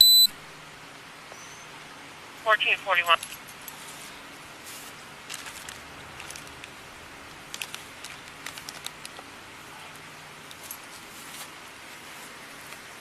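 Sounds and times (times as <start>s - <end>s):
light clicks and rustles: 3.1s - 12.9s.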